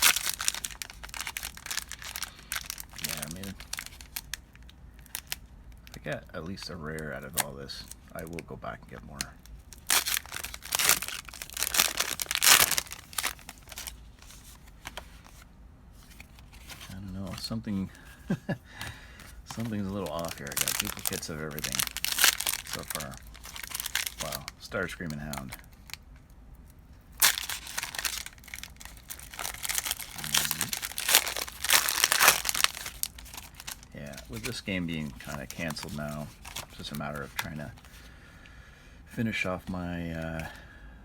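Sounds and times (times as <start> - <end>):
wrapper tearing and crinkling: 0.0 - 6.0, 9.1 - 15.4, 19.5 - 26.0, 27.2 - 38.0.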